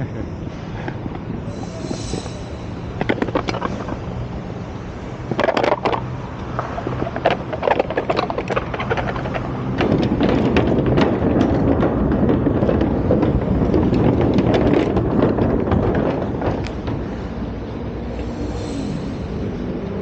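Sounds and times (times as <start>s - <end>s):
wind and tyre noise: 0.0s - 20.0s
bicycle clicks and knocks: 3.0s - 4.3s, 5.2s - 17.5s.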